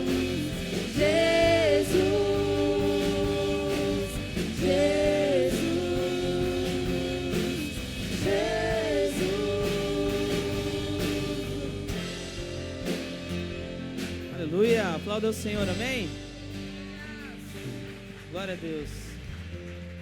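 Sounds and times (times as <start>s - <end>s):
voices singing held notes: 0.0s - 14.3s
worship band playing: 0.0s - 19.8s.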